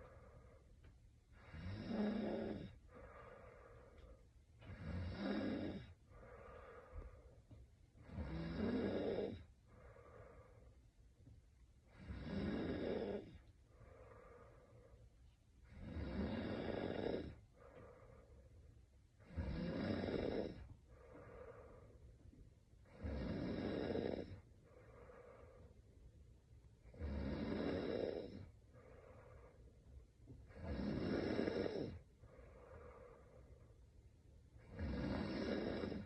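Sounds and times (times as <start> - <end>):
soft breathing: 0.0 - 36.0
woman snoring: 1.4 - 3.7, 4.6 - 7.1, 8.0 - 10.7, 11.9 - 15.0, 15.6 - 18.2, 19.2 - 21.9, 22.8 - 25.7, 26.8 - 29.6, 30.4 - 33.6, 34.6 - 36.0.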